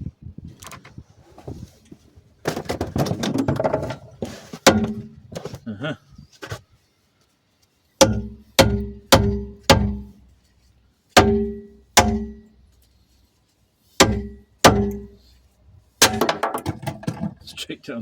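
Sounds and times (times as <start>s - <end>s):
hammer striking steel: 4.7s - 5.1s, 8.0s - 10.2s, 11.2s - 12.5s, 14.0s - 15.2s.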